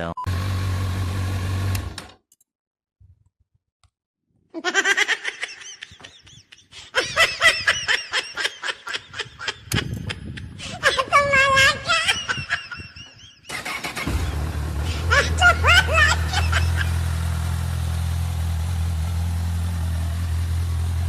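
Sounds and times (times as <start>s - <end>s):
person laughing: 4.6s - 17.2s.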